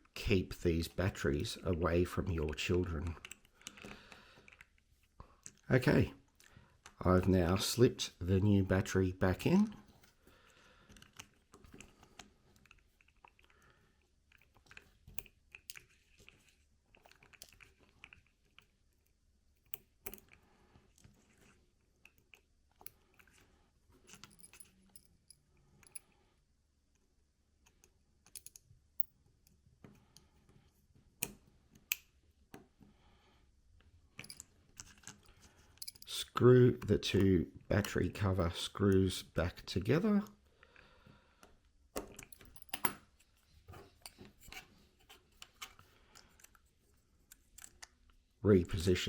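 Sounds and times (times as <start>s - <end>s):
small plastic and metal clicks: 14.3s - 23.4s, 27.6s - 30.3s, 31.2s - 32.7s, 47.2s - 48.1s.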